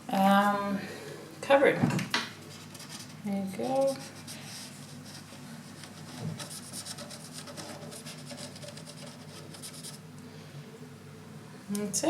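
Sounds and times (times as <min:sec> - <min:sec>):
faint low hum: 0:00.0 - 0:12.0
marker scratching on surface: 0:02.5 - 0:10.0.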